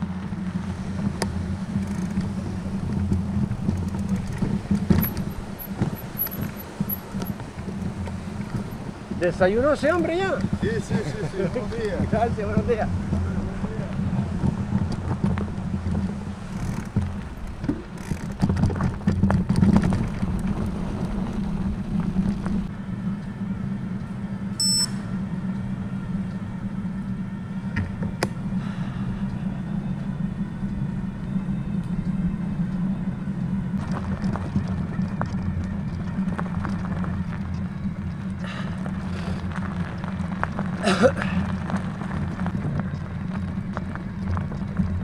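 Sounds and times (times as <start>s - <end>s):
vehicle engine drone: 0.0s - 45.0s
high beep: 24.6s - 25.1s.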